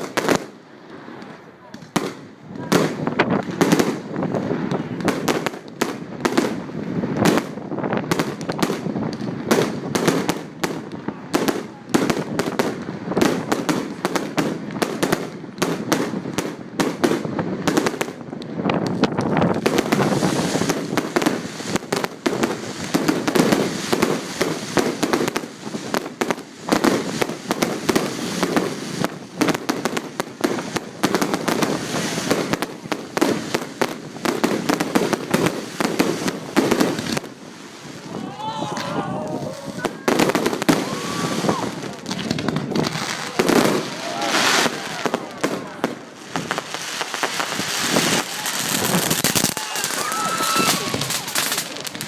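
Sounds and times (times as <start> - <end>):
fireworks bangs and crackles: 0.0 - 52.0.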